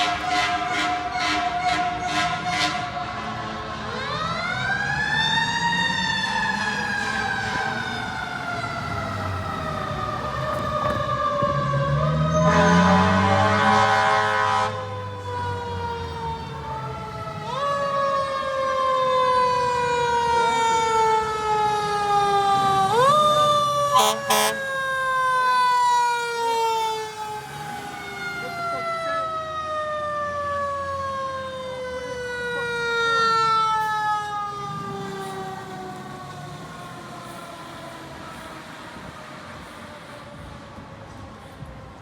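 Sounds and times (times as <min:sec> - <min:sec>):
air horn blasts: 0:00.0 - 0:03.0, 0:12.3 - 0:14.9, 0:24.0 - 0:24.6
mechanical siren wailing: 0:03.8 - 0:39.2.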